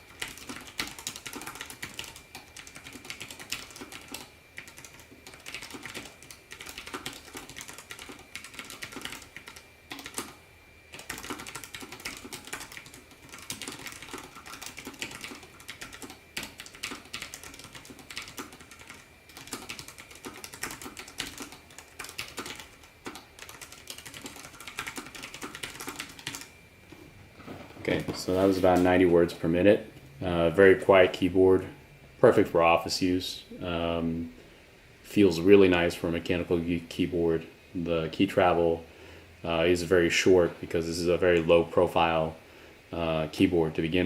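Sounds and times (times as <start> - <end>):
fast typing key clicks: 0.1 - 26.5.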